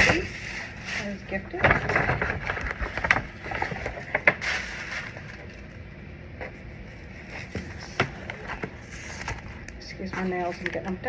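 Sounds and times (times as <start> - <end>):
packaging rustling: 0.0 - 5.8.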